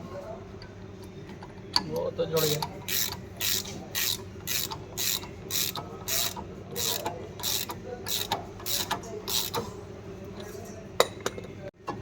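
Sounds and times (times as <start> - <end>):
ratchet wrench rasping: 2.4 - 9.6.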